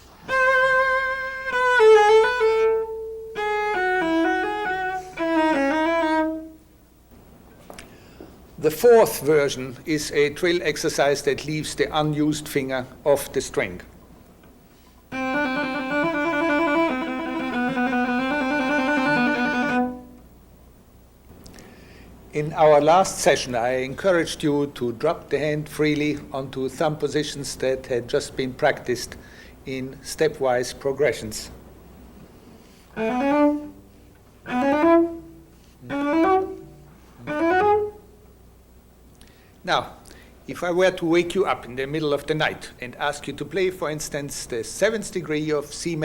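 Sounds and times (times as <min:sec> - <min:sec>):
bowed cello trill: 0:00.3 - 0:06.6, 0:15.1 - 0:20.2, 0:32.9 - 0:38.1.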